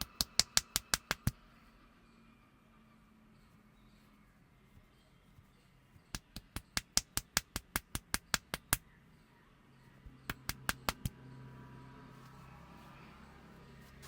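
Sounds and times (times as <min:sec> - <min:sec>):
hand slaps on head: 0:10.3 - 0:11.1.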